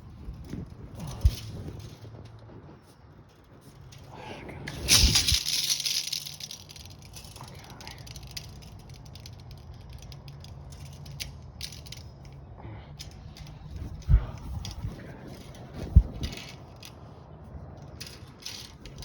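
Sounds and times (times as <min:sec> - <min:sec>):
low steady hum: 0:00.0 - 0:19.0
tape measure ratcheting clicks: 0:03.2 - 0:12.4, 0:17.8 - 0:19.0.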